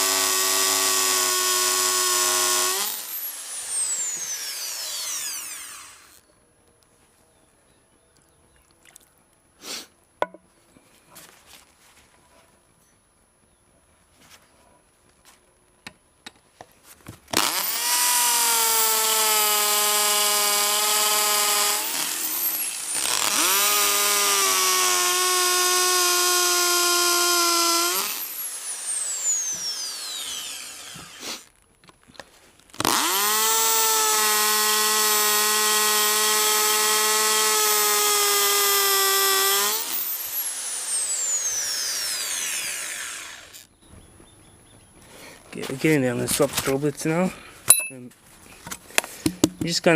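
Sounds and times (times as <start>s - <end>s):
electric drill whining: 0.0s - 6.2s, 17.3s - 31.5s, 32.7s - 43.7s.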